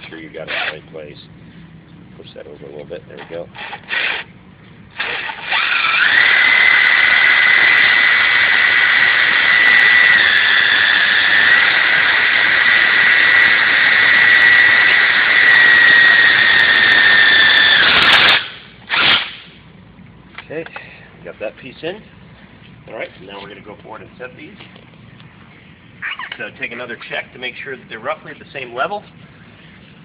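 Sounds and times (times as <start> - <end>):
power driver whining: 0.0 - 1.3, 3.2 - 19.5.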